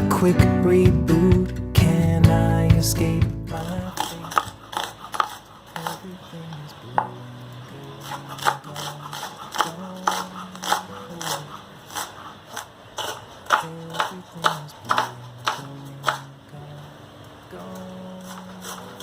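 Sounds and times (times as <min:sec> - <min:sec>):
instrumental pop music: 0:00.0 - 0:04.6.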